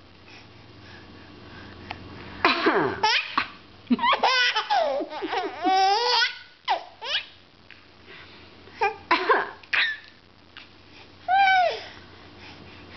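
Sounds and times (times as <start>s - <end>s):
baby laughing: 3.0s - 7.3s.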